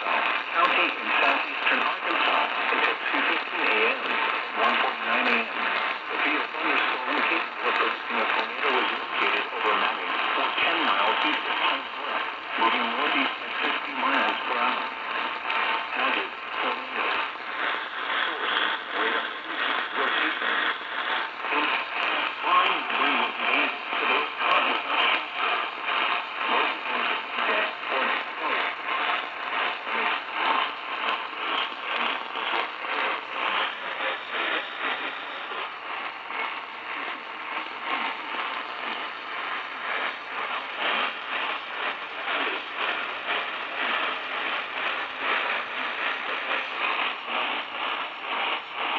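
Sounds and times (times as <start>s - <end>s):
radio static hiss and crackle: 0.0s - 48.9s.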